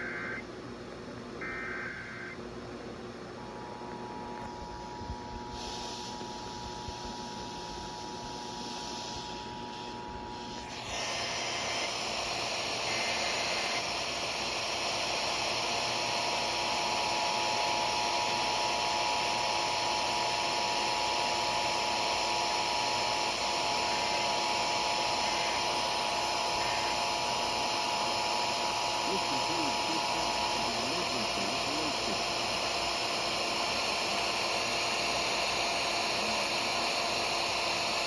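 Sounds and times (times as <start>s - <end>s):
faint steady tones: 0.0s - 0.5s
radio static hiss: 0.0s - 0.5s, 1.4s - 2.4s, 3.3s - 38.0s.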